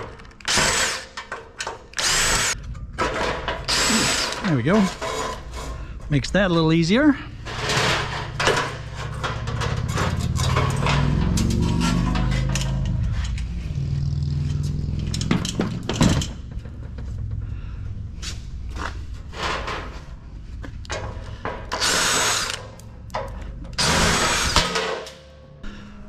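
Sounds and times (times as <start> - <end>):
power drill whirring: 1.9 - 2.6, 21.8 - 22.6
metal parts knocking: 7.4 - 13.6, 15.0 - 17.4.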